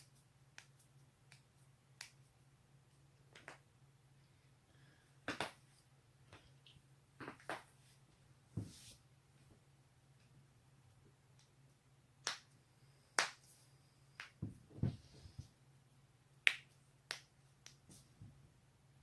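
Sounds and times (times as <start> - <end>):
faint steady hum: 0.0 - 19.0
soft low thumps: 14.4 - 15.5.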